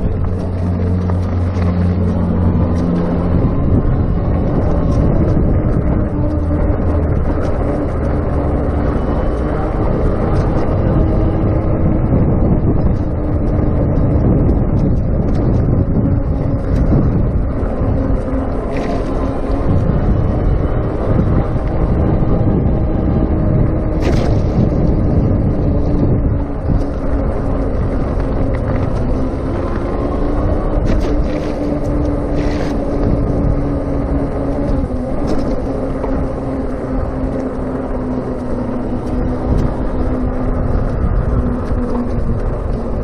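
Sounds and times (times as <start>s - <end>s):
steady mid-pitched hum: 0.0s - 43.0s
wind buffeting microphone: 0.0s - 43.0s.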